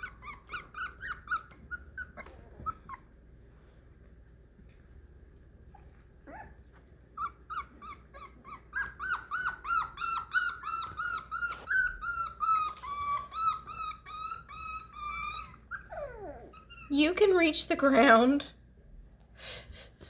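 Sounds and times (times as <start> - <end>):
puppy whining: 0.0 - 3.6, 5.0 - 17.1.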